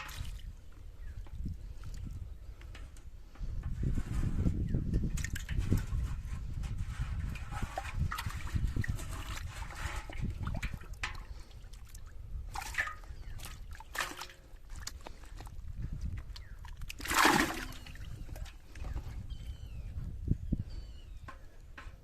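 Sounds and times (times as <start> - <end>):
water sloshing and splashing: 0.0 - 0.8, 5.1 - 19.3.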